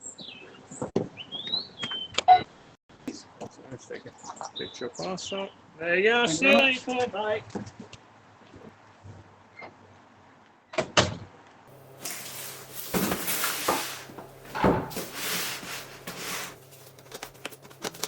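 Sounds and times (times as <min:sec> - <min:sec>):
rustling and knocking: 0:11.8 - 0:18.0
door shutting: 0:12.0 - 0:16.6.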